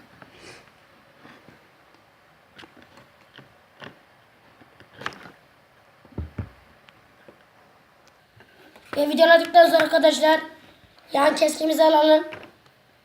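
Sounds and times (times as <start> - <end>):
dull thumps: 6.1 - 6.7.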